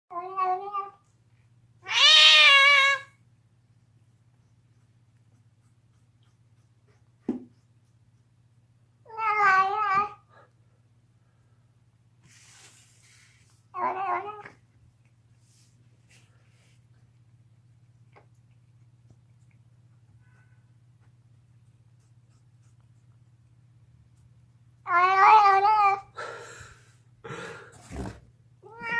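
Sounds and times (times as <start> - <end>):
cat yowling: 1.8 - 3.1, 24.9 - 26.0
cat chewing a bone: 3.8 - 8.5, 16.8 - 24.5
low steady hum: 10.2 - 28.9.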